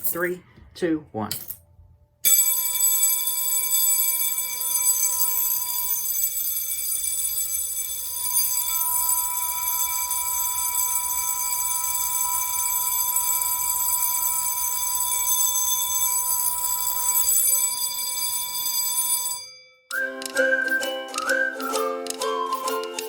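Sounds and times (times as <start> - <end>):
fire alarm bell ringing: 2.2 - 20.0.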